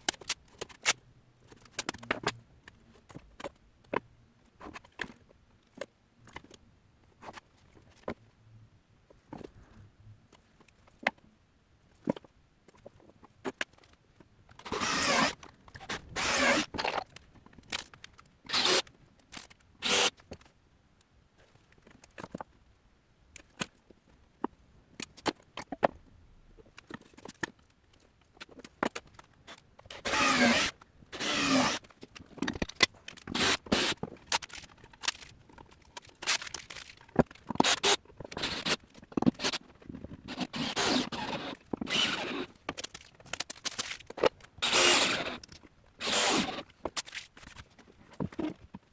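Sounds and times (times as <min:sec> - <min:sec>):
hand tool scraping: 0:14.6 - 0:17.0, 0:18.5 - 0:18.8, 0:19.8 - 0:20.1, 0:29.9 - 0:34.2, 0:37.5 - 0:47.2.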